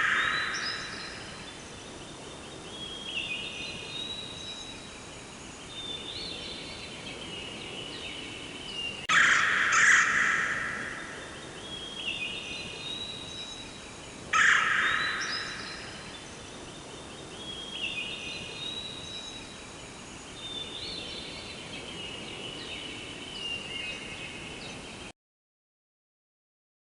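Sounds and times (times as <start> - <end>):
loud harsh bird calls: 0.0 - 1.4, 9.1 - 11.2, 14.3 - 16.0
birds chirping and whistling: 0.0 - 1.6.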